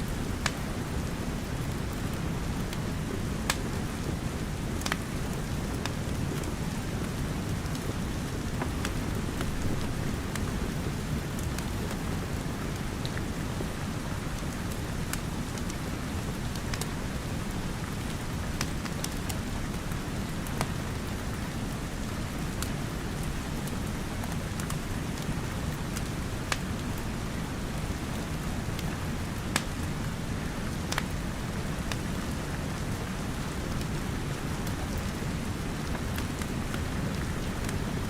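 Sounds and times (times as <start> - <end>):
steady rain: 0.0 - 38.0
wood fire crackling and popping: 0.2 - 2.0, 2.6 - 12.0, 14.6 - 17.0, 17.6 - 19.4, 28.4 - 32.2, 33.6 - 38.0.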